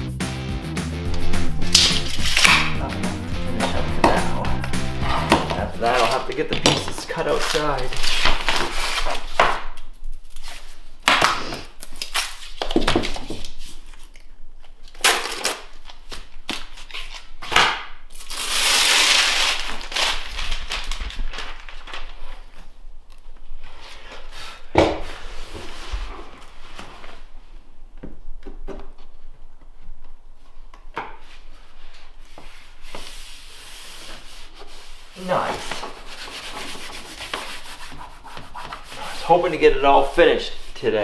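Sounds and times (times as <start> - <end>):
flooring pieces knocking: 1.1 - 7.7
rustling scrape: 1.7 - 2.8, 3.6 - 9.4, 23.6 - 27.6, 31.3 - 41.0.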